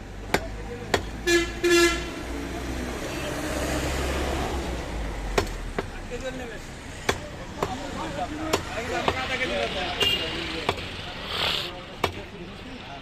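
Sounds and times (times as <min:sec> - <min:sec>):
passing traffic: 0:00.0 - 0:13.0
vehicle horn honking: 0:01.2 - 0:02.1.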